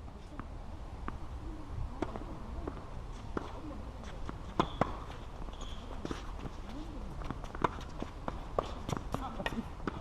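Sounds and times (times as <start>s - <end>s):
tennis ball bouncing on court: 2.0s - 10.0s
racket striking tennis ball: 4.2s - 5.2s, 7.3s - 10.0s.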